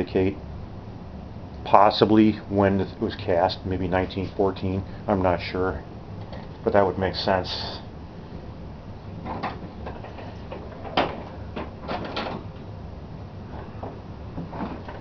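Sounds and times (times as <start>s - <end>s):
steady low hum: 0.0s - 15.0s
knocks and clunks: 9.2s - 12.7s, 13.5s - 15.0s.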